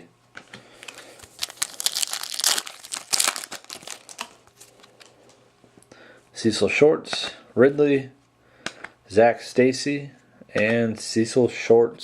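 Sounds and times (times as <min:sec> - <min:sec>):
foil wrapper tearing and crinkling: 0:00.8 - 0:05.1.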